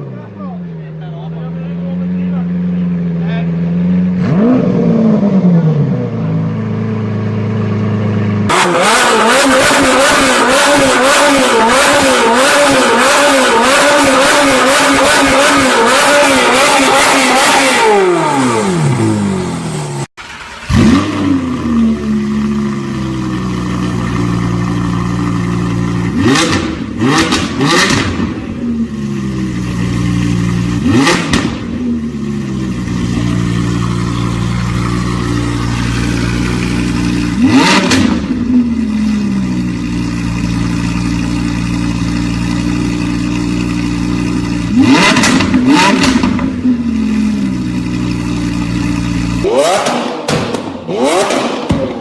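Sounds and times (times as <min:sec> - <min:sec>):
car engine revving: 0:00.0 - 0:52.0
engine idling and blipped: 0:00.0 - 0:52.0
exhaust pops: 0:23.7 - 0:28.6, 0:30.6 - 0:31.9, 0:32.7 - 0:46.7, 0:48.6 - 0:52.0.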